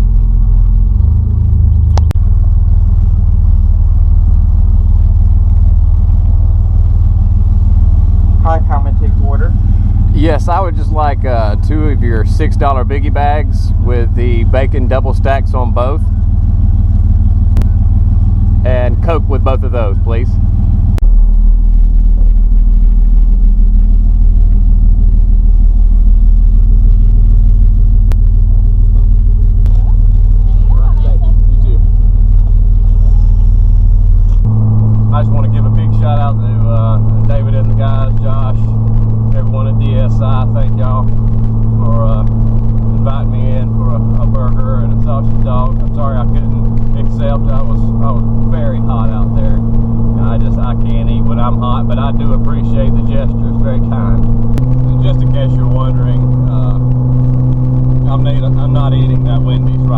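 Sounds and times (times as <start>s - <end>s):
pickup engine low rumble: 0.0s - 59.9s.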